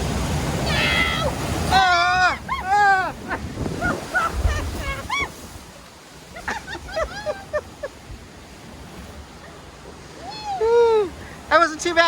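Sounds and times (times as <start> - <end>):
water rushing and splashing: 0.0 - 12.0
riders shrieking and whooping: 0.6 - 5.6, 10.2 - 11.1.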